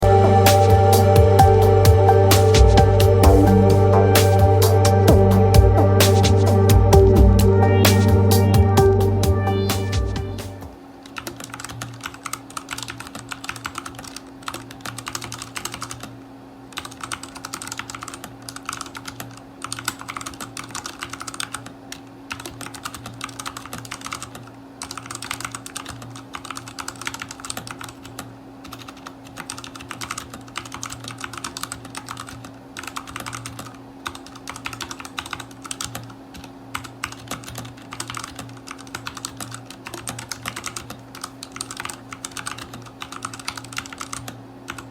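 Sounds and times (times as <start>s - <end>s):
faint low hum: 0.0s - 44.9s
mechanical keyboard typing: 11.1s - 16.1s, 16.7s - 44.9s.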